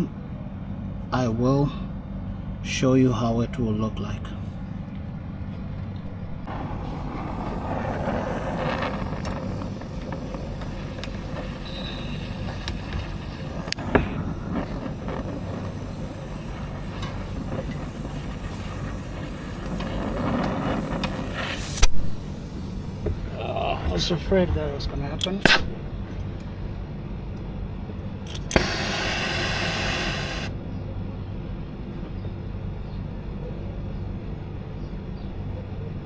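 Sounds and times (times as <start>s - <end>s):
torch flame roaring: 6.4s - 27.4s, 28.2s - 30.5s
sharp snap: 21.4s - 22.2s, 25.2s - 25.8s.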